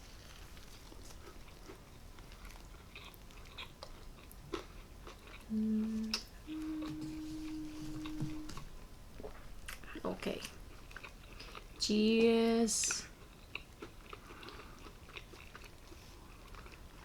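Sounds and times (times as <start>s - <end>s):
steady hum-like tones: 5.5s - 10.8s.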